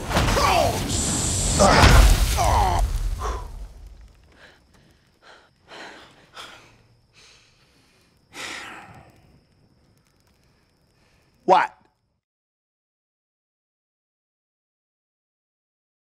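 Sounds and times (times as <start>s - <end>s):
impact rumble: 0.0s - 4.3s
person breathing hard and gasping: 4.3s - 9.2s.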